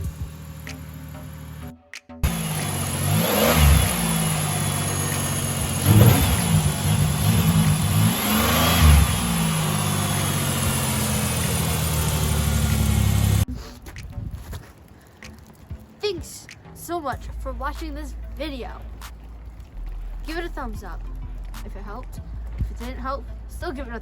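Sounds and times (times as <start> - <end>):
car engine revving: 0.0 - 13.5.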